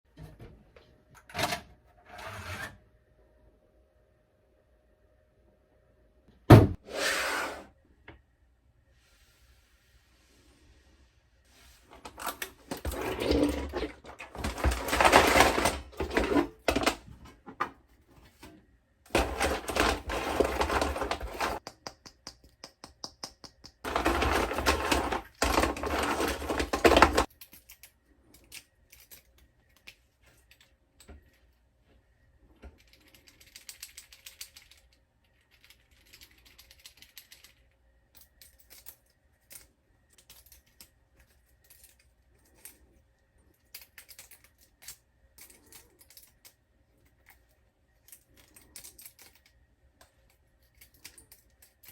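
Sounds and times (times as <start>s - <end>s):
plastic pieces clattering: 12.0s - 17.4s, 19.1s - 21.6s, 23.8s - 27.8s.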